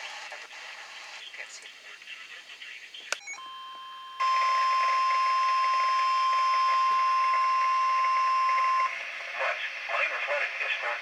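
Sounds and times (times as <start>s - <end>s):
radio static: 0.0s - 3.2s, 4.2s - 11.0s
high piercing alarm tone: 3.4s - 8.9s.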